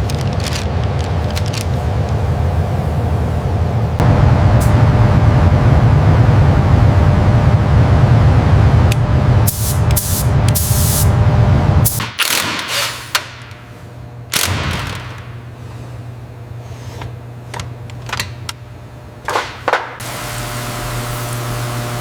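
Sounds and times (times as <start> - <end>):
loud low rumble: 0.0 - 12.0
steady low hum: 0.0 - 22.0.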